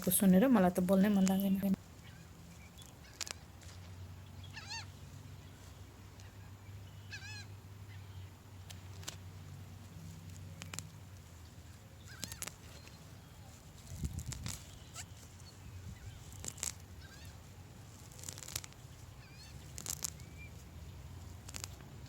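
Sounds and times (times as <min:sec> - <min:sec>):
birds calling: 0:04.2 - 0:08.7, 0:09.8 - 0:21.7.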